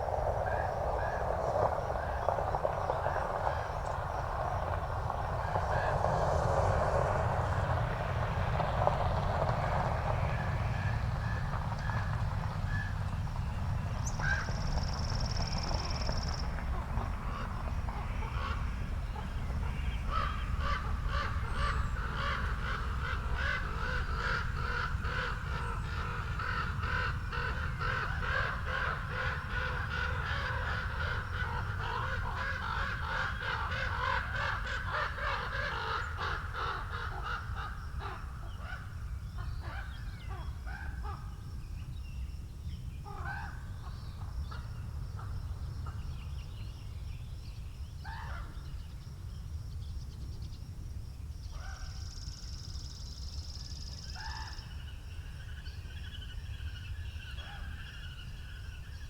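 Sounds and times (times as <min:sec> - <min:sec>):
birds calling: 0:00.0 - 0:41.3
low wind rumble on microphone: 0:00.0 - 0:59.0.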